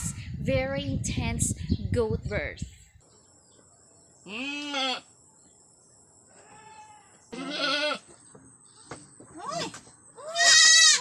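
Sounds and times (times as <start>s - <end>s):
goat bleating: 4.3s - 5.1s, 6.4s - 8.1s, 8.7s - 11.0s.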